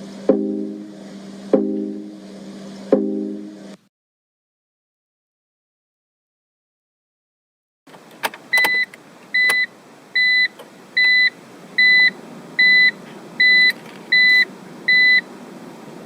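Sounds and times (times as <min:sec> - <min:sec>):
clicks: 0:07.9 - 0:09.6
low steady background noise: 0:07.9 - 0:16.0
car warning beeps: 0:08.5 - 0:15.2.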